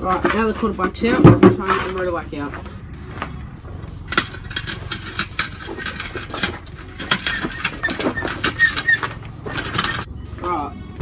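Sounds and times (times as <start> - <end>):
metal clinks and knocks: 0.0 - 10.2
faint high squeak: 7.2 - 10.1.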